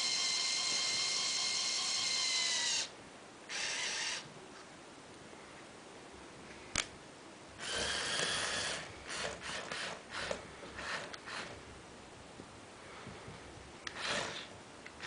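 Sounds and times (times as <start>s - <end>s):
short rattling bursts: 13.9s - 14.5s.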